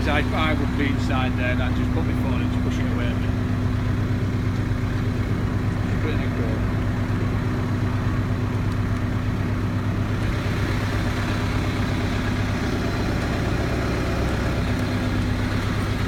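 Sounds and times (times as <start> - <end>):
truck engine running at raised revs: 0.0 - 16.0.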